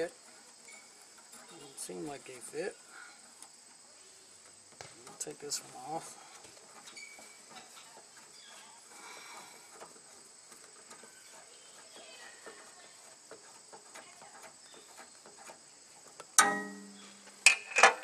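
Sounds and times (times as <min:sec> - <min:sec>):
steady high-pitched hiss: 0:00.0 - 0:18.0.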